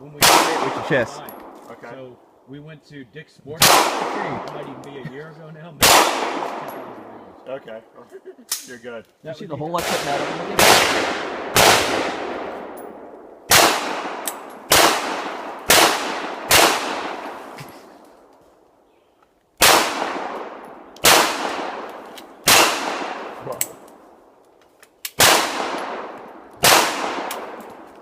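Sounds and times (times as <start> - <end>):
echoing gunshots: 0.2 - 1.6, 3.6 - 4.8, 5.8 - 7.1, 9.8 - 17.6, 19.6 - 24.2, 25.2 - 28.0.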